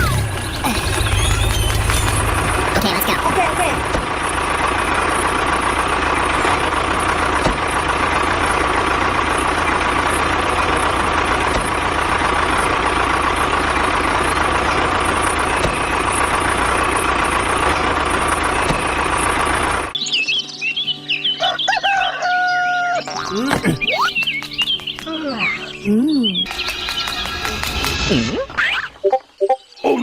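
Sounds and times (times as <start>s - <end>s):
tractor engine idling: 0.0s - 20.0s.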